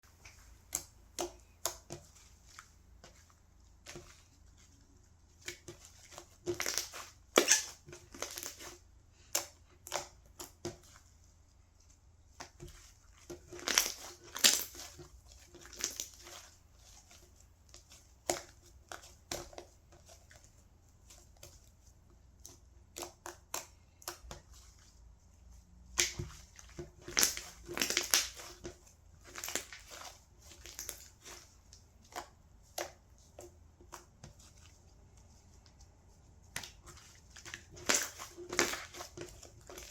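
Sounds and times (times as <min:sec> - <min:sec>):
slime crackling and popping: 0:05.5 - 0:10.6, 0:13.4 - 0:15.0, 0:15.6 - 0:16.5, 0:25.8 - 0:28.6, 0:29.2 - 0:31.4, 0:36.6 - 0:39.9.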